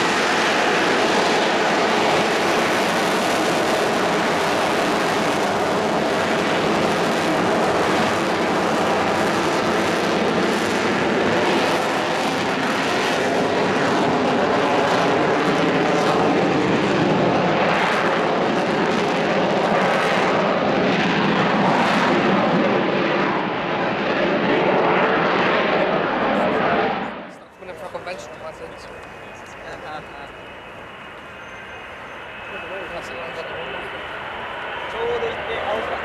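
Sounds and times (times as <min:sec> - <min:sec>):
jet engine roaring in flight: 0:00.0 - 0:36.0.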